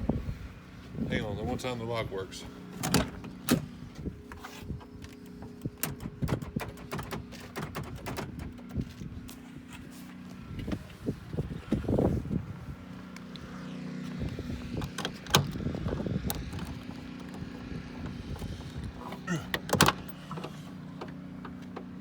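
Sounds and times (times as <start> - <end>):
vehicle lock and door clunks: 2.8 - 3.8, 5.4 - 8.9, 14.7 - 22.0.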